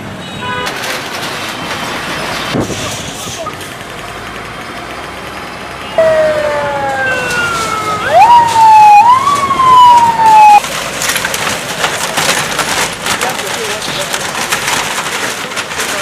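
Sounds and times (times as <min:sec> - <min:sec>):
siren wailing: 0:05.9 - 0:10.6
rapid clatter of knocks: 0:10.6 - 0:16.0.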